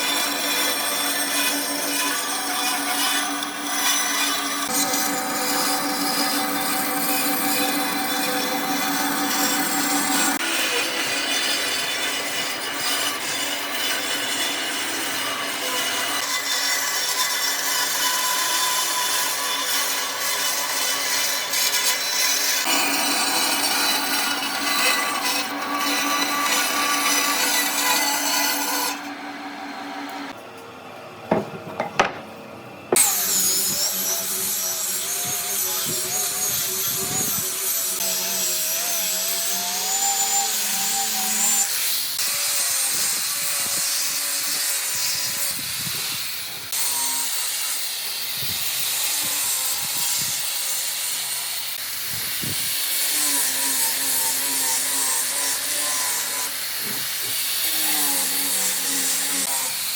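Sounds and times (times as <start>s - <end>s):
sharp knocks: 31.3s - 32.3s.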